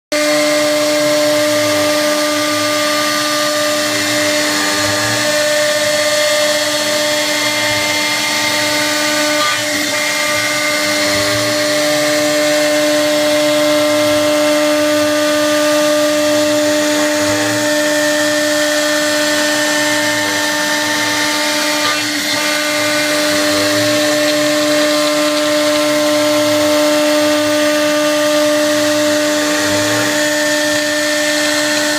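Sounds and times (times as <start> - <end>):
router spindle milling whine: 0.1 - 31.9.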